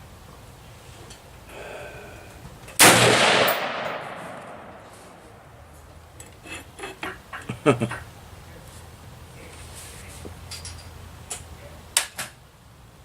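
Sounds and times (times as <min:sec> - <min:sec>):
rifle shot with echo: 0:02.8 - 0:05.5.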